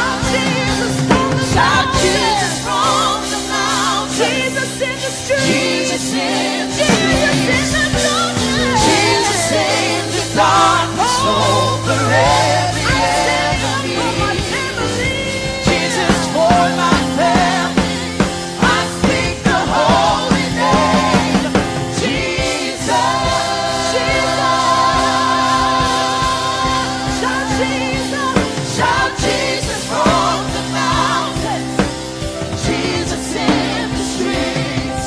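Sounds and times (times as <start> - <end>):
singers holding vocal lines: 0.0 - 35.0
worship band playing: 0.0 - 35.0.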